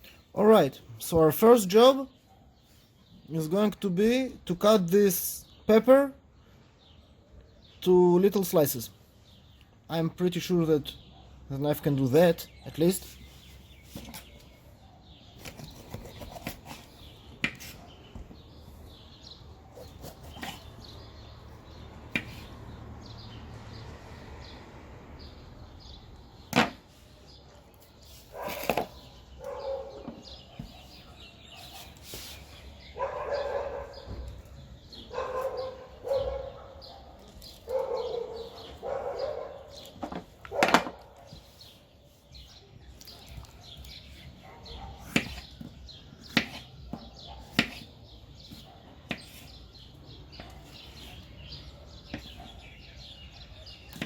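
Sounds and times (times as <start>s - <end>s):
knife cutting on a board: 15.4s - 17.8s, 19.7s - 20.7s, 22.1s - 22.5s, 45.0s - 45.6s, 46.3s - 49.6s
dog barking: 29.4s - 31.8s, 33.0s - 34.2s, 35.1s - 39.8s, 44.4s - 45.2s.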